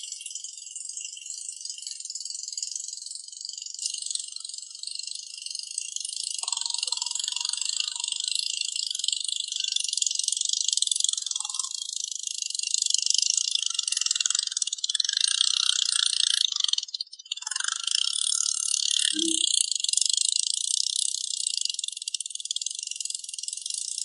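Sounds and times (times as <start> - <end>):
insect chirring: 0.0 - 24.0.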